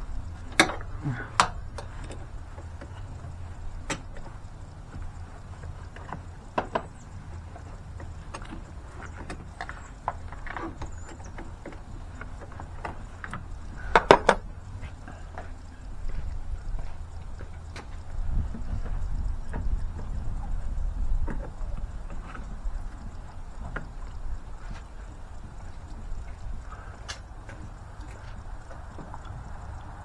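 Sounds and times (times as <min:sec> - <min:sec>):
steady low rumble: 0:00.0 - 0:30.0
tools clicking and knocking: 0:05.6 - 0:14.5.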